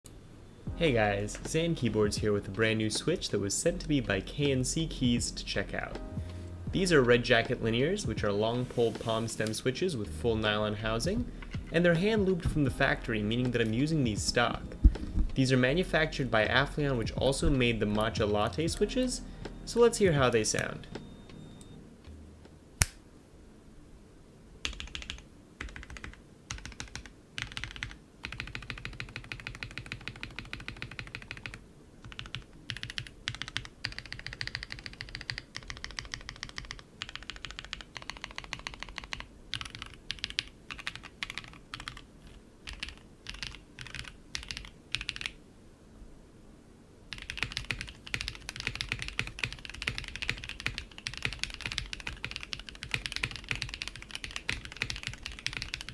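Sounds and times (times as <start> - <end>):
mechanical keyboard typing: 24.6 - 42.0, 42.7 - 45.4, 47.1 - 55.9.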